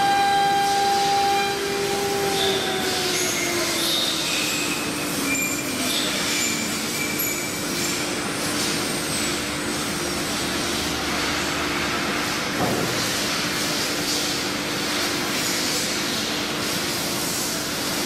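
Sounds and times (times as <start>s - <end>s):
wood router cutting: 0.0s - 4.3s
high whining tones: 0.0s - 7.6s.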